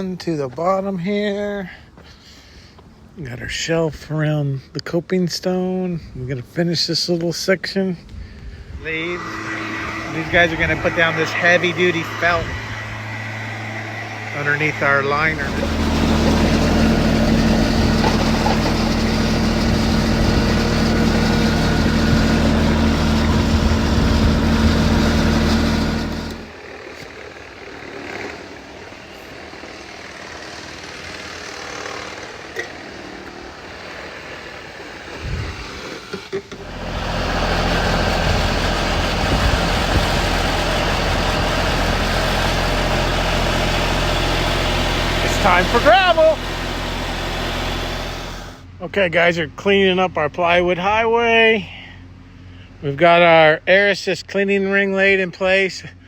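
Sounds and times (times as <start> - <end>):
construction machine engine running: 8.7 - 35.5, 36.5 - 48.8.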